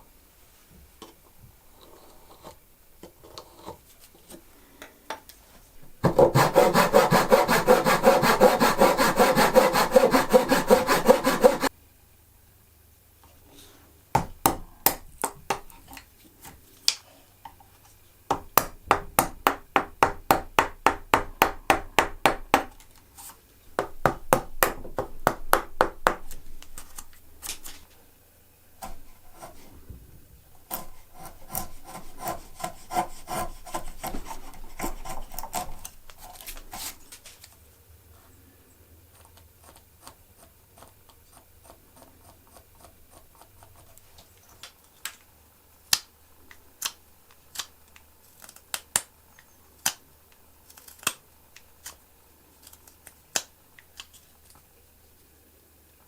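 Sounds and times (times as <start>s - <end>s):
hand saw cutting wood: 6.0s - 11.7s, 30.6s - 37.0s.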